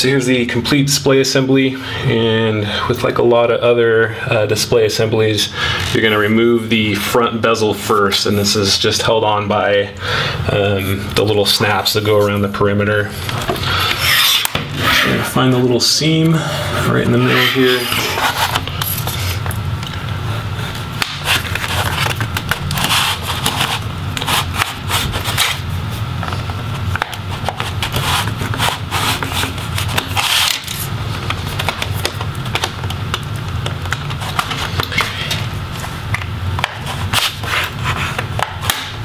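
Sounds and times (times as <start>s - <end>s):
steady low hum: 0.0s - 39.0s
tool scraping plastic seam: 13.2s - 15.4s, 16.6s - 19.5s, 21.0s - 25.7s, 26.3s - 33.2s.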